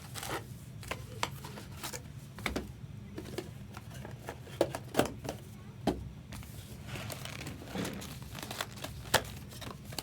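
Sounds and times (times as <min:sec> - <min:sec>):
low room hum: 0:00.0 - 0:10.0.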